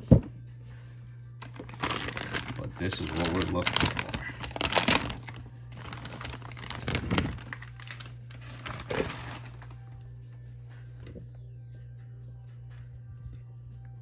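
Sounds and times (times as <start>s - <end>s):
low steady hum: 0.0s - 14.0s
packaging crinkling: 1.4s - 9.9s.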